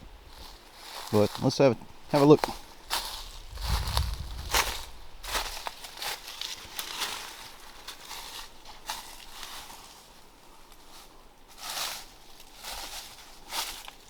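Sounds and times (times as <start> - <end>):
rustling leaves: 2.1 - 10.2.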